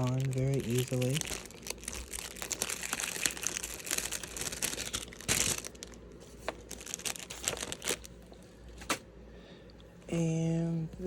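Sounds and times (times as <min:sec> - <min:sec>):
plastic packaging crinkling: 0:00.0 - 0:09.0.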